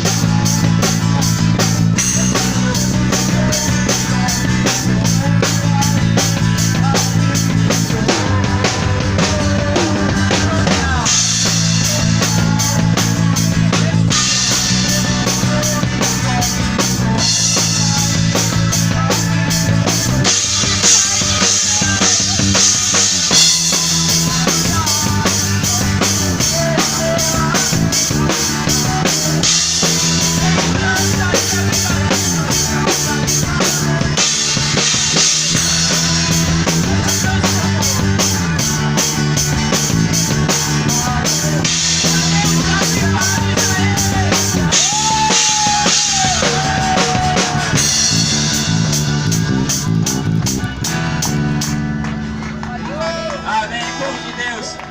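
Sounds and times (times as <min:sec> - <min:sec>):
band playing: 0:00.0 - 0:54.9.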